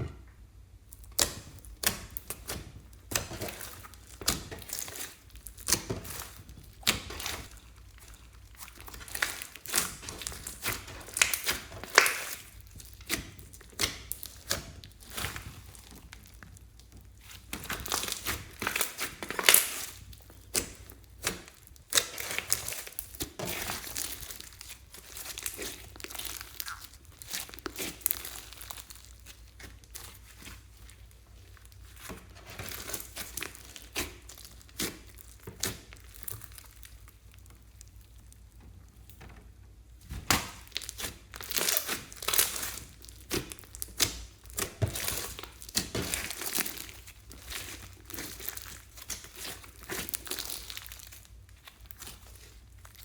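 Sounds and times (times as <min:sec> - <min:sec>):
slime squeezed and stretched: 0:00.9 - 0:38.4, 0:40.1 - 0:53.0
air bubbles popping in slime: 0:26.4 - 0:27.0.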